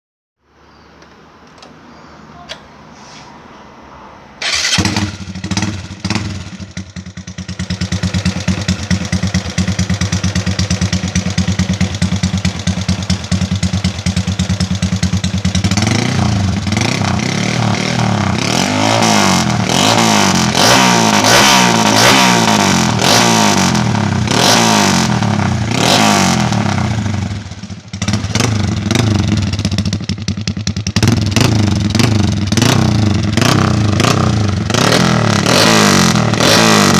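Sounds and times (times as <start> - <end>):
motorcycle engine idling and revving: 4.3 - 36.9.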